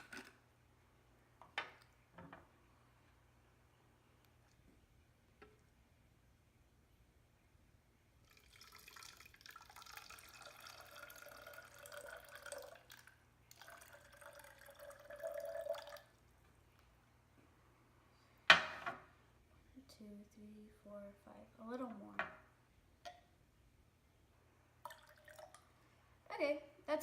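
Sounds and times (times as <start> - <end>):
water pouring into bottle: 8.2 - 16.1, 24.8 - 25.6.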